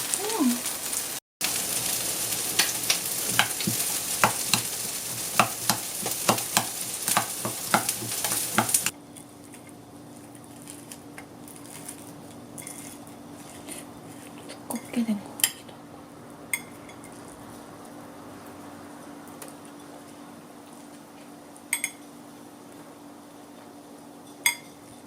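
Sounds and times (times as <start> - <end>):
food sizzling in a frying pan: 0.0 - 25.0
utensil tapping and scraping pan: 2.6 - 8.9.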